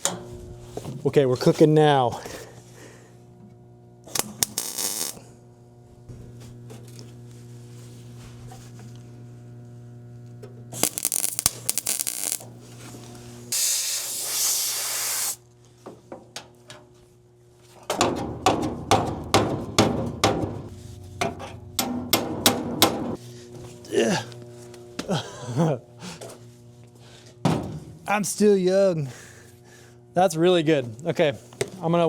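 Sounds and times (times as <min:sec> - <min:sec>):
electrical hum: 0:00.0 - 0:15.8, 0:20.6 - 0:32.0
welding crackle and hiss: 0:04.1 - 0:05.2, 0:10.7 - 0:15.4.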